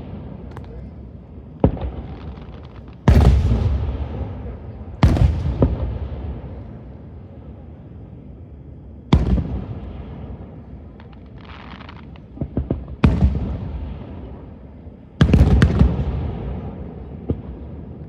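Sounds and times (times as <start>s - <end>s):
fireworks booming: 0.0s - 7.4s, 9.0s - 18.0s
volley of cracks: 0.4s - 0.9s, 1.7s - 3.6s
small crackles: 2.0s - 3.1s, 10.9s - 12.6s.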